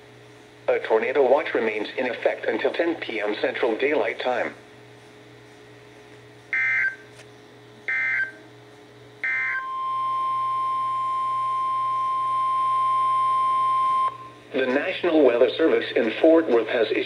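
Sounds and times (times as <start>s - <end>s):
steady single-pitch alert tone: 9.2s - 14.3s.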